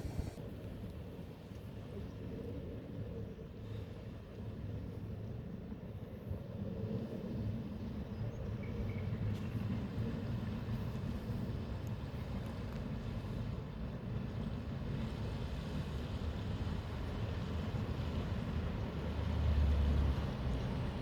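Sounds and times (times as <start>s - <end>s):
low outdoor rumble: 0.0s - 0.4s.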